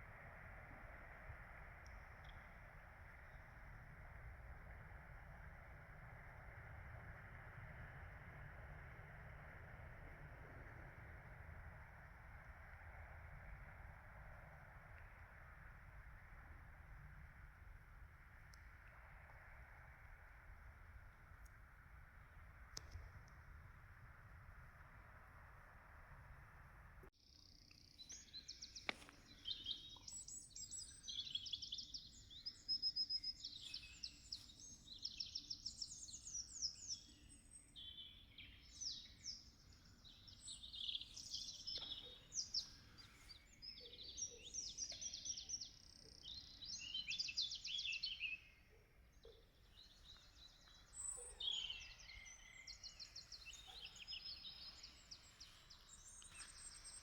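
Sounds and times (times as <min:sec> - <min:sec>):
songbird singing trills: 0:27.2 - 0:57.0.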